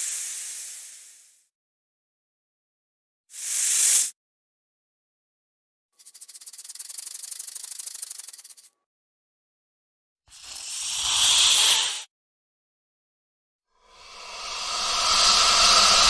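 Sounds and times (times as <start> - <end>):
snake hissing: 6.0 - 8.7, 10.3 - 12.1, 13.8 - 16.0
snake rattling buzz: 6.0 - 8.7, 10.3 - 12.1.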